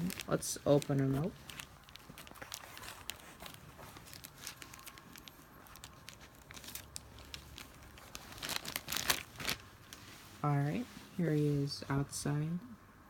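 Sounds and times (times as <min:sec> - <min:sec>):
plastic packaging crinkling and tearing: 0:00.0 - 0:10.3.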